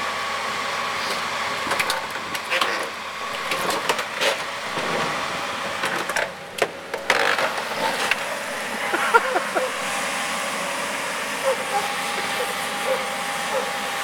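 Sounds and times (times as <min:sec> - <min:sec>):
excavator running: 0:00.0 - 0:14.0.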